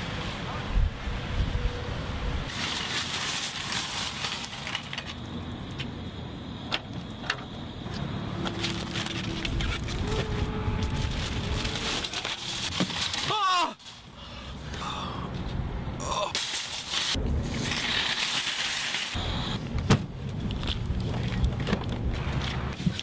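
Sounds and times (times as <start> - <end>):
traffic noise: 0.0 - 23.0.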